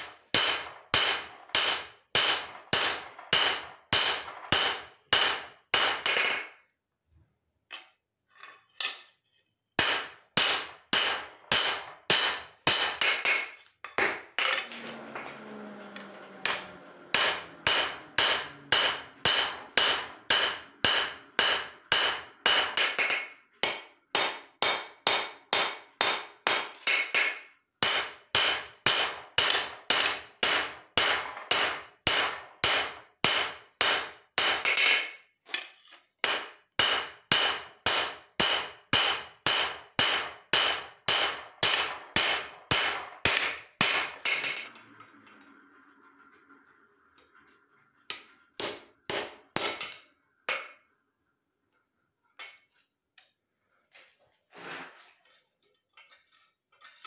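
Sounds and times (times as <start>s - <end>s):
hammer striking steel on anvil: 0.0s - 6.5s, 9.8s - 14.4s, 16.4s - 35.2s, 36.2s - 44.6s, 48.1s - 50.7s.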